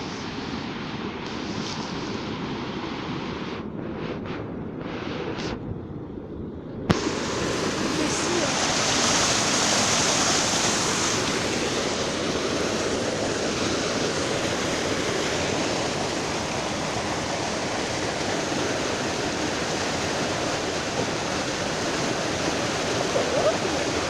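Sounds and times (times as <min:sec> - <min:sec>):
flowing water: 0:06.8 - 0:24.0.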